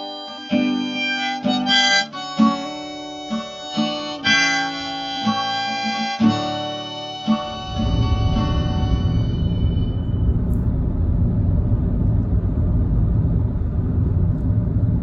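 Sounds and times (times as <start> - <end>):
harmonica melody: 0.0 - 10.3
plucked acoustic guitar: 0.0 - 10.7.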